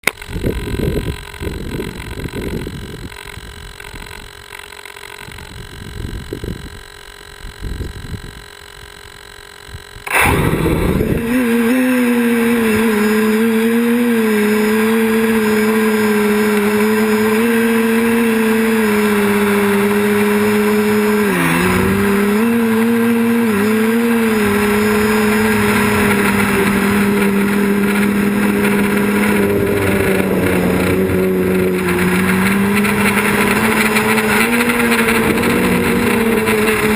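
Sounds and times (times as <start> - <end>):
quadcopter motors buzzing: 0.0 - 36.9
low rumbles and thumps: 21.6 - 36.9.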